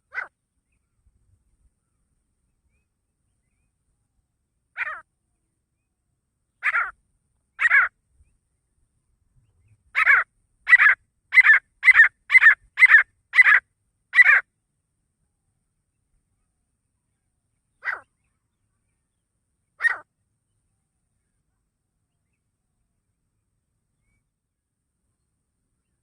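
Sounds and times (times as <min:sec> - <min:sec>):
francolin calling: 0:04.7 - 0:05.1, 0:06.6 - 0:08.0, 0:09.9 - 0:14.5, 0:19.7 - 0:20.1.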